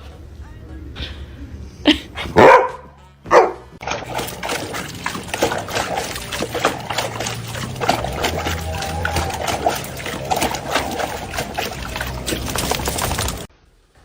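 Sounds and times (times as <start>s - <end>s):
dog barking: 2.2s - 3.7s.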